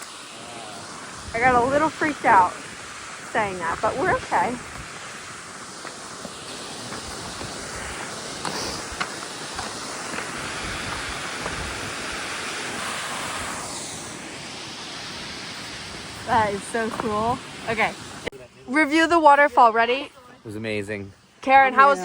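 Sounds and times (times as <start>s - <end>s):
waterfall rushing: 0.0s - 18.9s
wind on microphone: 0.8s - 18.3s.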